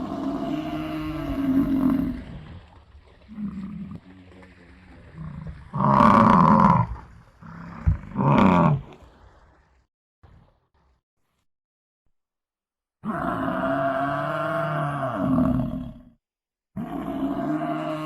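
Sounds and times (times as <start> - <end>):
bison bellowing: 5.1 - 8.9
low grunts: 5.1 - 8.9.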